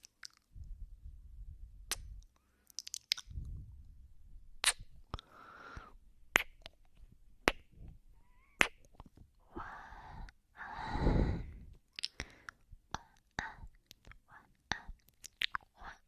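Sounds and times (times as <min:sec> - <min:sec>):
wet kiss clicks: 0:01.9 - 0:02.1, 0:04.6 - 0:05.2, 0:06.3 - 0:06.8, 0:08.6 - 0:09.1
breathy exhales: 0:05.2 - 0:06.0, 0:09.5 - 0:12.5.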